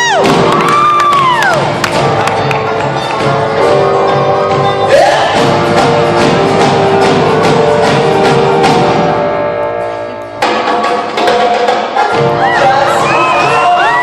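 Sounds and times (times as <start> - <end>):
drum hits: 0.0 - 2.6, 4.9 - 9.3, 10.4 - 12.6
live band music: 0.0 - 14.0.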